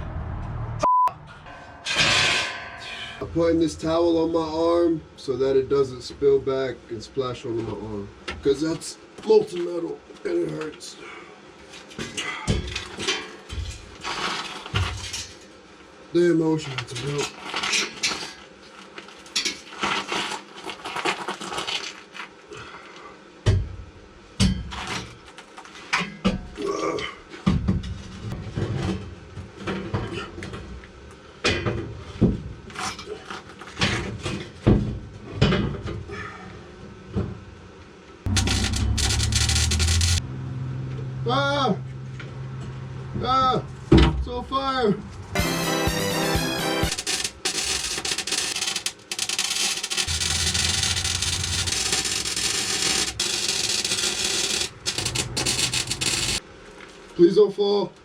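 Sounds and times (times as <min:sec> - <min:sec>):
low hum: 0:00.0 - 0:05.2, 0:38.3 - 0:43.1, 0:50.0 - 0:56.4
welding arc crackling: 0:38.3 - 0:40.2, 0:46.8 - 0:56.4.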